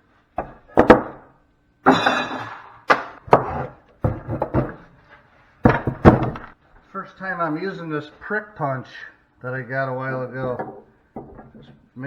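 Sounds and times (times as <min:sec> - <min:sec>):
metal ringing: 0:01.8 - 0:02.7
metal parts knocking on workbench: 0:01.9 - 0:04.9, 0:05.6 - 0:06.5, 0:10.4 - 0:11.8.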